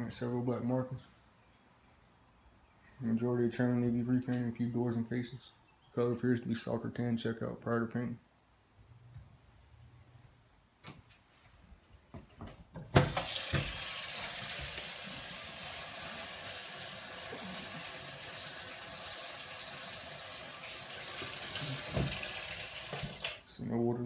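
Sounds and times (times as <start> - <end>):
water running into a sink: 13.0 - 23.4.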